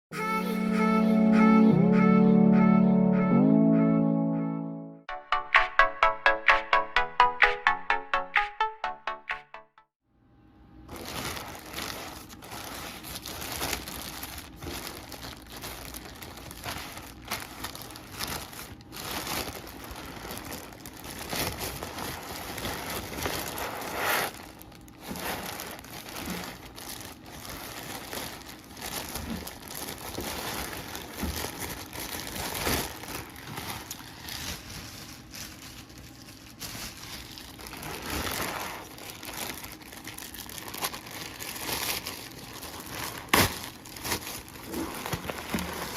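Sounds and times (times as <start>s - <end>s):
packaging crinkling and rustling: 10.9s - 45.9s.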